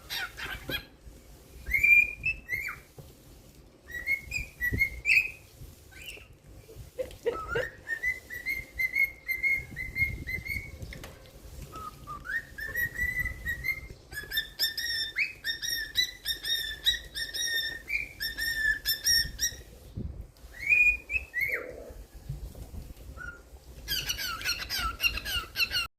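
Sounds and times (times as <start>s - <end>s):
cockatiel whistling: 1.6s - 2.9s, 3.9s - 6.3s, 7.3s - 10.8s, 11.7s - 19.7s, 20.5s - 21.7s, 23.2s - 25.9s
harsh bird chirps: 11.8s - 19.8s, 23.2s - 25.9s.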